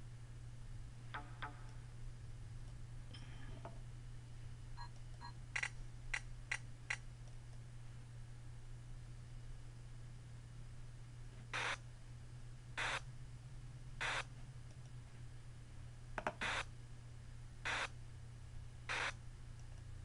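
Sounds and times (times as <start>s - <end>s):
low steady hum: 0.0s - 20.0s
short bursts of hiss-like noise: 11.5s - 11.8s, 12.8s - 13.0s, 14.0s - 14.3s, 16.4s - 16.7s, 17.7s - 17.9s, 18.9s - 19.2s.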